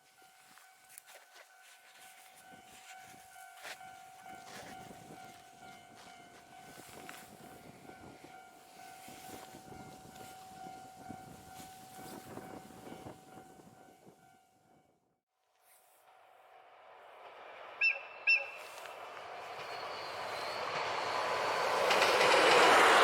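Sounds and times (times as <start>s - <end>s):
locomotive engine and rail noise: 0.0s - 15.0s, 15.6s - 23.0s.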